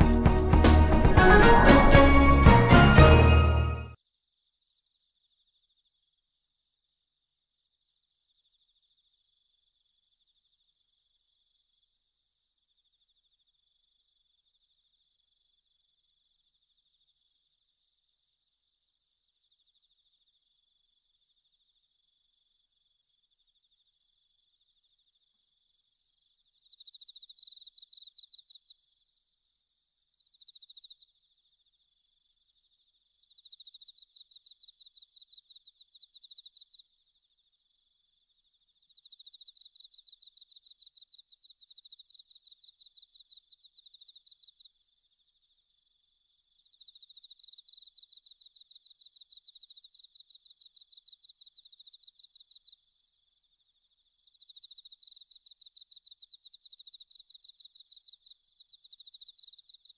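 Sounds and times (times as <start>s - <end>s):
crickets chirping: 4.0s - 59.9s.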